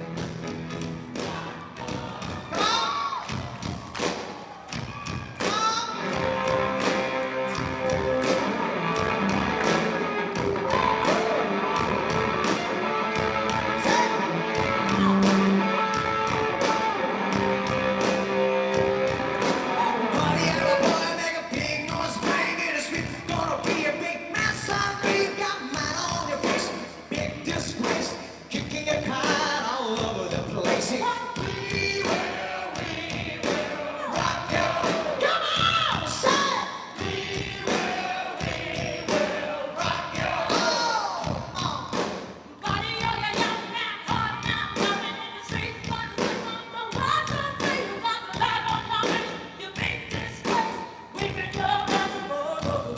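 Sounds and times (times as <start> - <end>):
drumbeat: 0.0 - 52.9
live rock band playing: 0.0 - 52.9
people singing: 1.1 - 3.1, 30.6 - 42.0.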